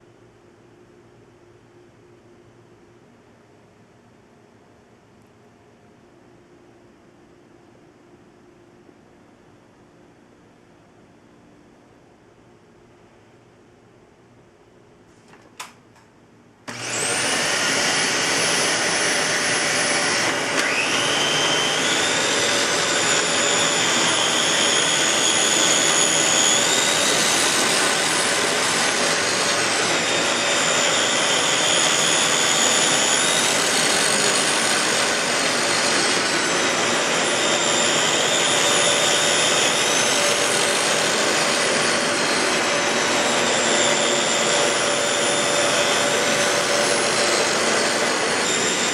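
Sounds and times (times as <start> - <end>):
vacuum switch click: 15.4 - 16.1
vacuum cleaner motor whining: 16.7 - 48.9.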